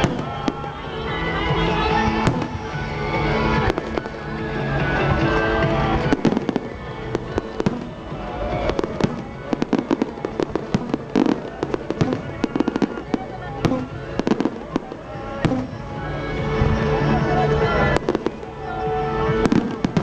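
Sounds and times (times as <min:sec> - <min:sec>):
fireworks bursting and crackling: 0:00.0 - 0:20.0.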